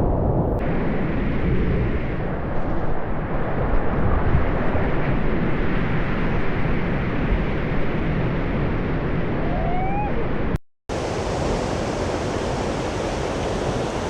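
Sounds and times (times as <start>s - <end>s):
waterfall rushing: 10.9s - 14.0s.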